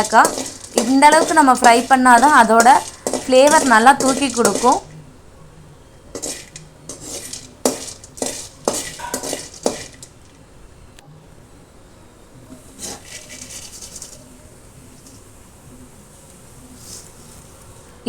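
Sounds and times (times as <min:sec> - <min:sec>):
spatula scraping a pan: 0:00.0 - 0:04.9, 0:06.1 - 0:10.2, 0:12.6 - 0:14.3.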